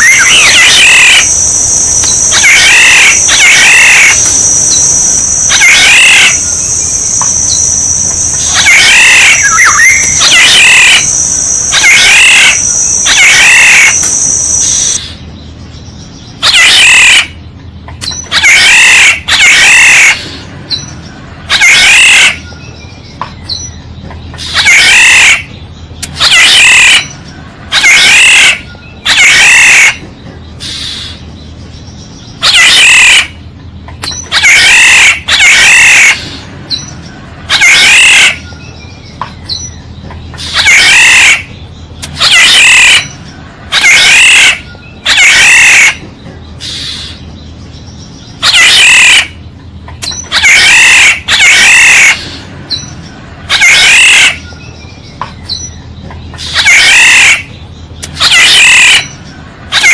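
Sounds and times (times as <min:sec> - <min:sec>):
high insect buzz: 0:00.0 - 0:15.0
oriole calls: 0:00.0 - 0:15.0.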